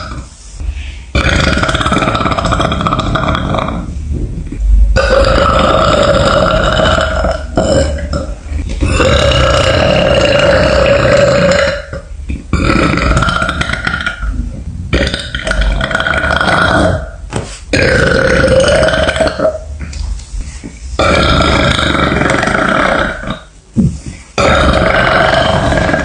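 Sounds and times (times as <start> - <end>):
woman burping loudly: 24.4 - 26.0.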